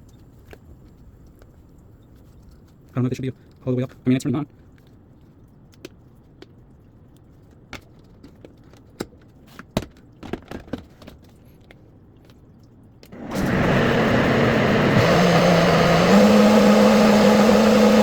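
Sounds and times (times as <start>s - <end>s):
blender motor whining: 13.2s - 18.0s.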